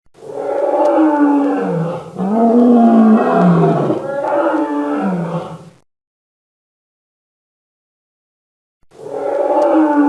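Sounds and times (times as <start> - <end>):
deep dinosaur roars: 0.2 - 5.7, 9.0 - 10.0.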